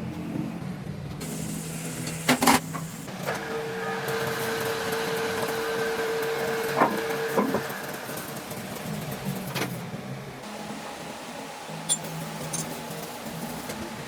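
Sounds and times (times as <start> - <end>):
metal clanks: 11.9 - 12.7.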